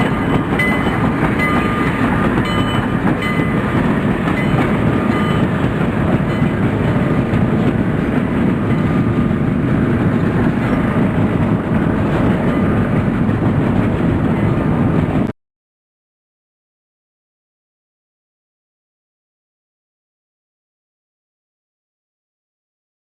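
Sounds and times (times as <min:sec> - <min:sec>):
train running: 0:00.0 - 0:15.3.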